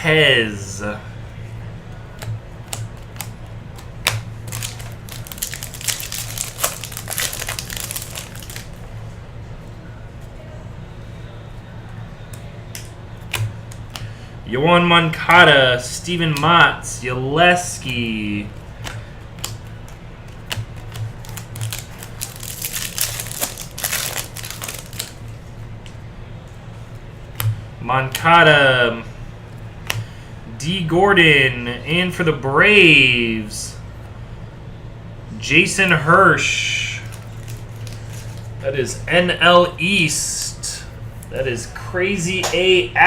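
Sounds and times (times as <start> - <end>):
foil wrapper crinkling: 4.1 - 8.8, 18.8 - 25.4, 37.0 - 38.6.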